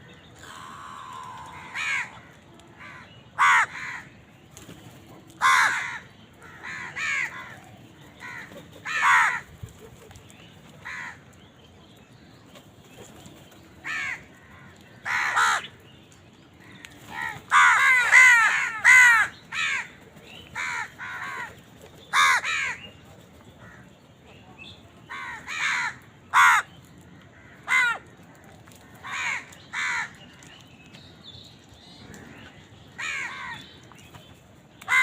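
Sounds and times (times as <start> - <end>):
crows cawing: 0.4 - 4.1, 5.4 - 7.6, 8.2 - 9.5, 10.8 - 11.2, 13.8 - 15.7, 16.7 - 20.0, 20.6 - 21.5, 22.1 - 22.8, 25.1 - 28.1, 28.7 - 30.2, 33.0 - 33.7.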